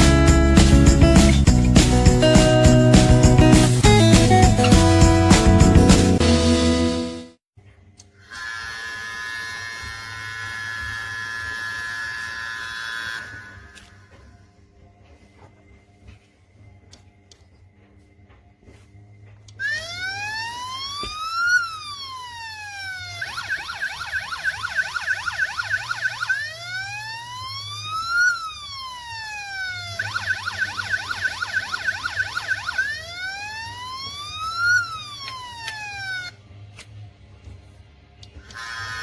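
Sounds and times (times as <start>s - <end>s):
electronic toy police siren: 8.2s - 14.5s, 19.5s - 36.4s, 38.4s - 39.0s.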